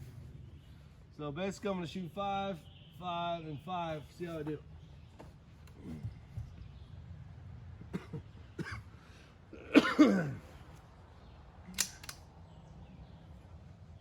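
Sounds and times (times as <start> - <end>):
man coughing: 7.9 - 8.9, 9.5 - 10.5
sharp clicks: 11.7 - 12.4.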